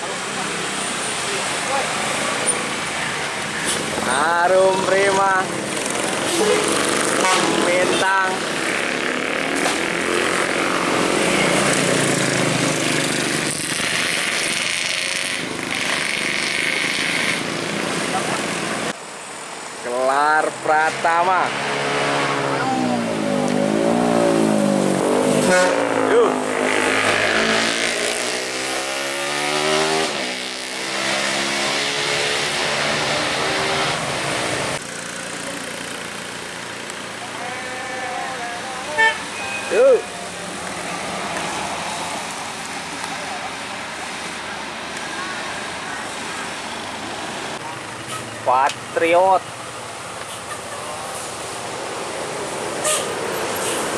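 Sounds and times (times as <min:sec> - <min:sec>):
bus engine: 0:00.0 - 0:53.9
traffic noise: 0:00.0 - 0:53.9
bus horn playing a tune: 0:07.2 - 0:07.7, 0:25.4 - 0:26.0, 0:37.6 - 0:39.7
coach bus driving past: 0:33.9 - 0:53.9.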